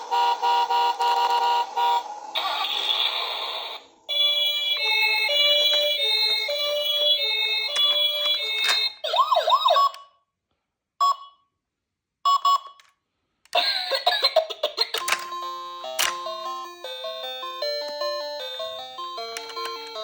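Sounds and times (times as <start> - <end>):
toy siren wailing sweeps: 0.0 - 10.0.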